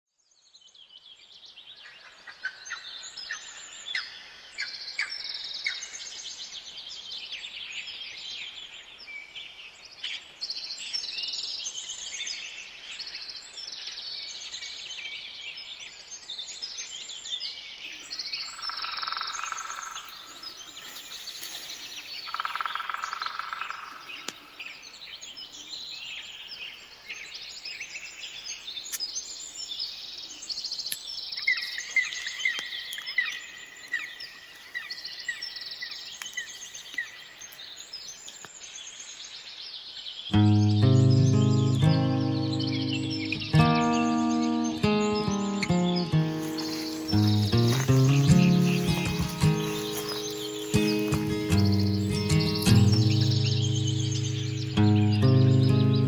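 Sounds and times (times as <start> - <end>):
songbirds chirping: 0.3 - 56.0
lower louder bird call: 46.2 - 56.0.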